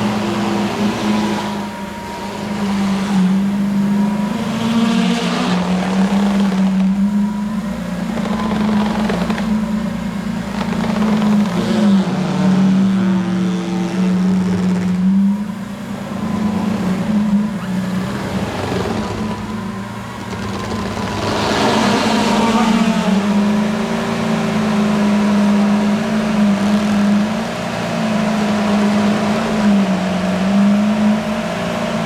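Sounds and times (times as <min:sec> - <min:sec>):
car engine droning while driving: 0:00.0 - 0:32.0.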